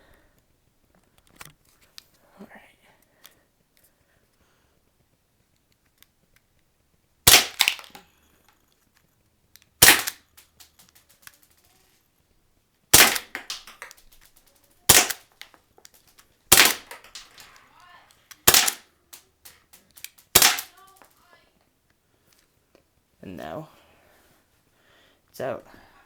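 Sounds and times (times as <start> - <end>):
airsoft pistol shots popping: 7.3 - 8.0, 9.8 - 11.0, 12.9 - 14.1, 14.9 - 15.5, 16.5 - 17.6, 18.3 - 20.8.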